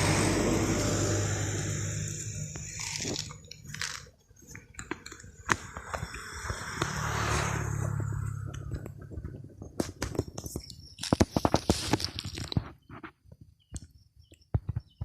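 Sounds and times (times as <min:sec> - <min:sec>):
motor vehicle passing: 0:00.0 - 0:03.4, 0:05.4 - 0:09.8
kittens crunching dry food: 0:01.7 - 0:06.8, 0:08.4 - 0:13.1.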